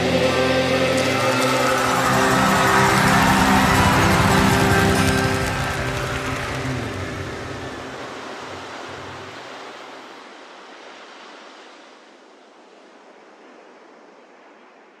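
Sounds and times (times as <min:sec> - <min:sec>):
low music notes: 0:00.0 - 0:09.4
ocean surf washing in: 0:00.0 - 0:15.0.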